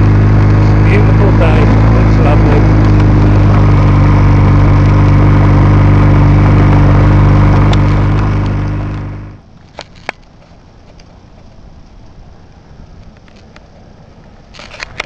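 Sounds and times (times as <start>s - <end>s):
motorcycle engine running: 0.0s - 9.5s.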